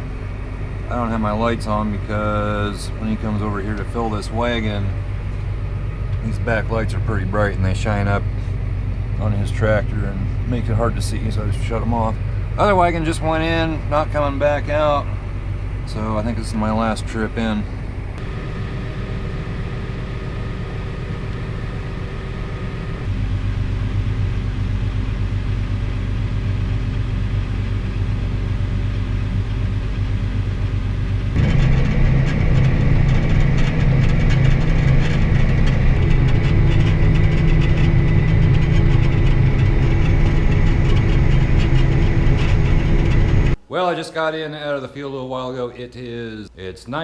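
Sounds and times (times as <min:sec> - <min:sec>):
tractor engine running: 0:00.0 - 0:43.7
rattling: 0:31.4 - 0:43.6.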